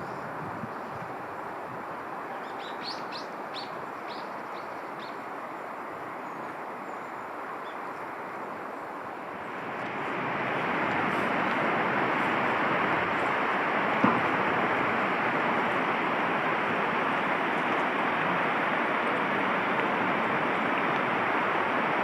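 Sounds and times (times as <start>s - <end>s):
rushing background noise: 0.6s - 22.0s
bird chirping: 2.4s - 5.2s.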